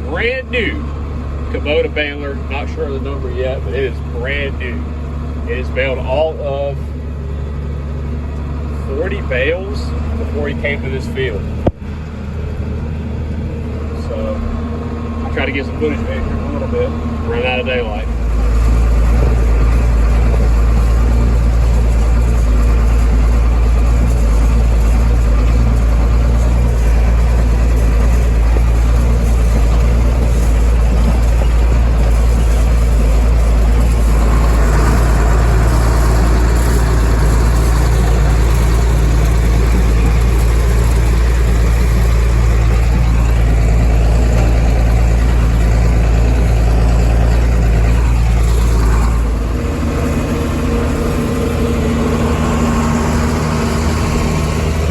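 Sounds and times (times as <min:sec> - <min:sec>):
tractor diesel engine running: 0:00.0 - 0:54.9.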